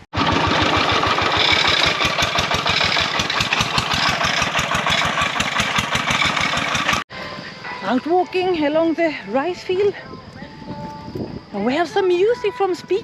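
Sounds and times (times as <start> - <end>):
small engine chugging: 0.0 - 7.1.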